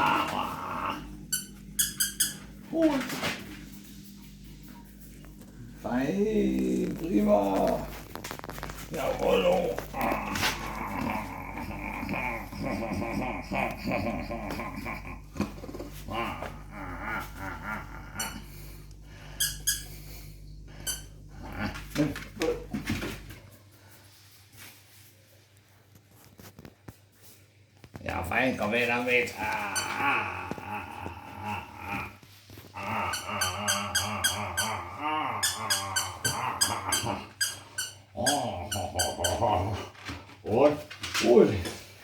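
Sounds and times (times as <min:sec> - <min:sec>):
dog toy squeaking: 0:01.4 - 0:02.4
squeaky dog toy squeaking: 0:01.4 - 0:02.4, 0:36.9 - 0:38.4.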